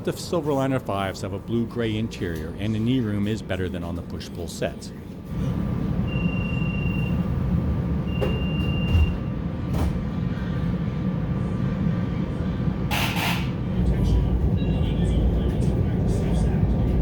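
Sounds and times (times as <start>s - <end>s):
train low rumble: 0.0s - 17.0s.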